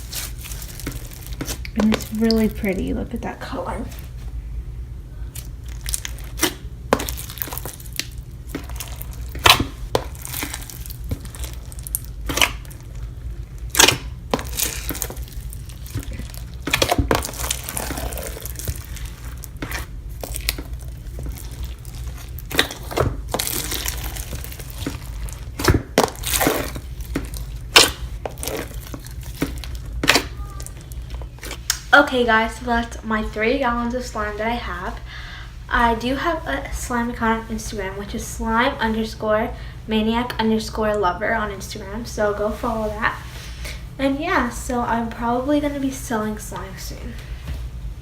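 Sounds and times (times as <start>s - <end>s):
slime with beads clicking and popping: 5.4s - 12.9s, 13.6s - 31.9s.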